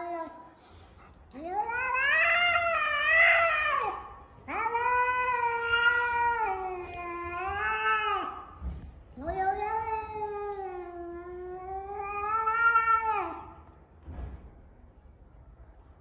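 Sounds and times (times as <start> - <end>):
cat yowling: 1.3 - 8.5, 9.2 - 13.6.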